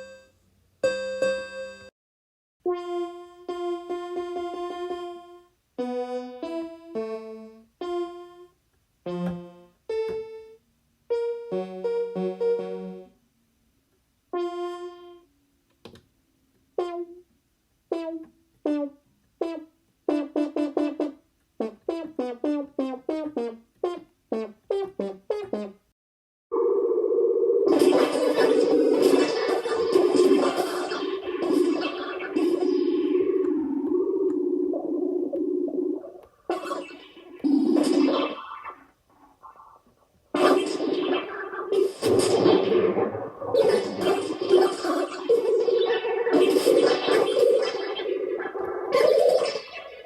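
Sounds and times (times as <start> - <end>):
synthesized computer beeps: 26.5 - 36.2, 40.4 - 50.0.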